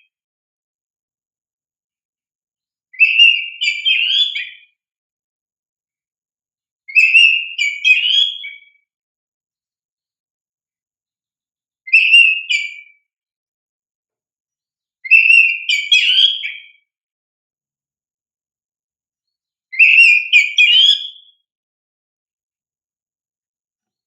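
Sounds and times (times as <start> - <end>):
bird whistling song phrases: 2.9 - 4.8, 6.9 - 8.8, 11.9 - 13.1, 15.0 - 16.9, 19.7 - 21.5.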